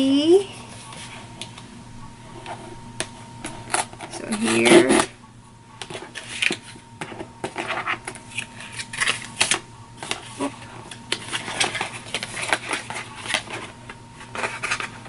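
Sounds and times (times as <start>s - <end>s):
hands opening packaging: 7.6s - 10.3s.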